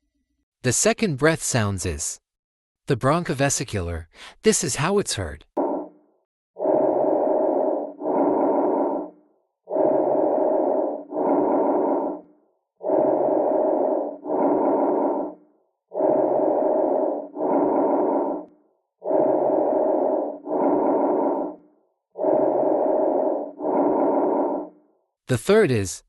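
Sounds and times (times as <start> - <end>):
breathing in and out: 4.1 - 4.4, 6.6 - 25.1.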